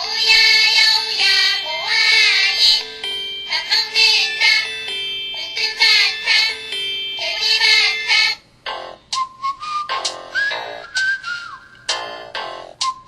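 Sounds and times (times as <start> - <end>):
mobile phone ringtone melody: 0.0 - 9.1.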